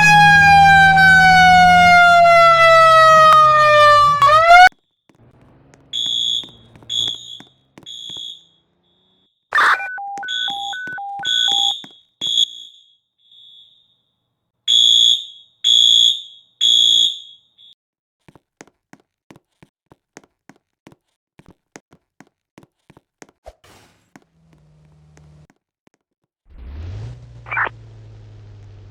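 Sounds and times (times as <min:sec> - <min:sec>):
fire alarm shrill pulses: 0:00.0 - 0:04.7, 0:06.0 - 0:14.0, 0:14.7 - 0:17.8
alarm tone alternating high and low: 0:06.0 - 0:12.8.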